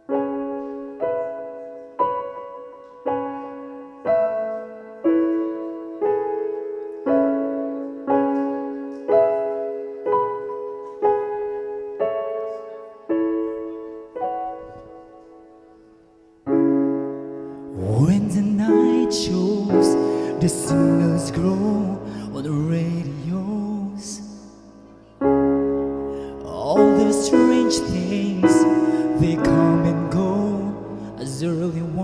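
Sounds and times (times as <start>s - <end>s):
slow piano chords: 0.0s - 32.0s.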